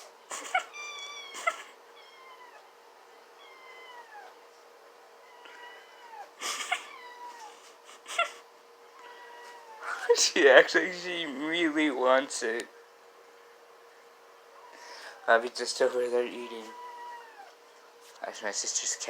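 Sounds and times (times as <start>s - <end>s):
cat meowing: 0.5s - 4.4s, 5.2s - 7.6s, 9.0s - 10.0s, 16.4s - 17.6s.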